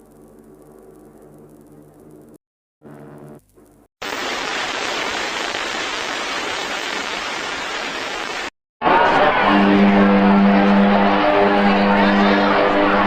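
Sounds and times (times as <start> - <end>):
loud rushing hiss: 4.0 - 8.5.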